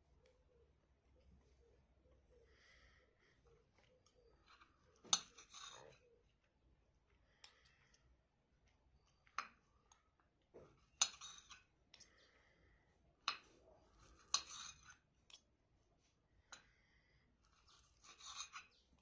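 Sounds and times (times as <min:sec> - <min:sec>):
cutlery clinking on a plate: 0:05.0 - 0:06.0, 0:11.0 - 0:12.1, 0:14.2 - 0:15.5.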